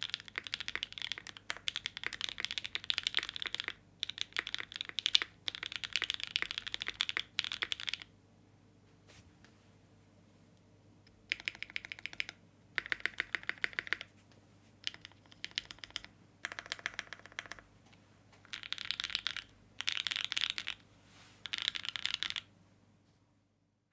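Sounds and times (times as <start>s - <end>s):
mechanical keyboard typing: 0.0s - 8.1s, 11.2s - 14.1s, 14.8s - 17.7s, 18.4s - 20.8s, 21.4s - 22.5s.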